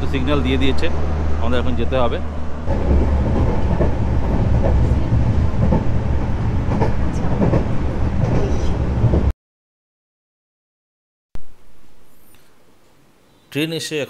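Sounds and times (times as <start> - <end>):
train rumbling: 0.0 - 9.3.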